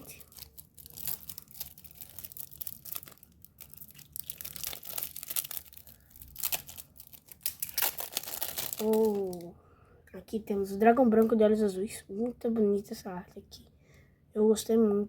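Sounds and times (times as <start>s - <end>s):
plastic wrapping crinkling: 0.0s - 9.5s.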